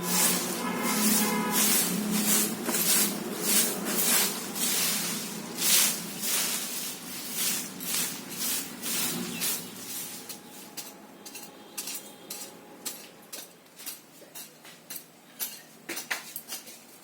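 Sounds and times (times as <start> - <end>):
short swishing scraping strokes: 0.0 - 10.8.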